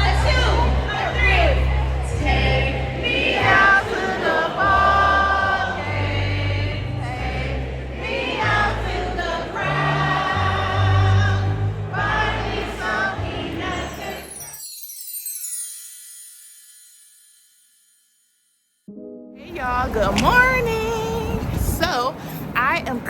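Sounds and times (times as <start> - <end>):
choir singing gospel music: 0.0 - 14.6.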